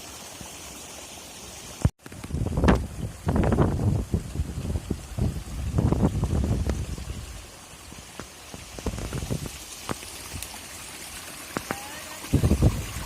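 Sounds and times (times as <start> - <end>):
hiss of running water: 0.0 - 13.0
wind buffeting microphone: 2.2 - 7.4, 8.7 - 9.6, 12.3 - 13.0.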